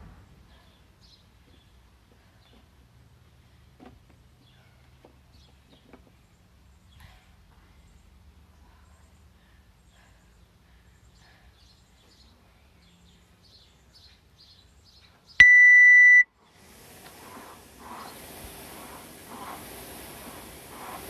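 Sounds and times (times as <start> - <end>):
heavy breathing: 6.9 - 12.3
long electronic beep: 15.4 - 16.3.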